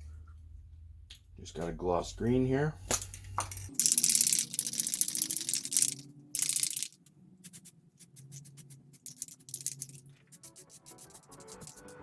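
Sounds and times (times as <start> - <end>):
fast rattling clicks: 3.5 - 12.0.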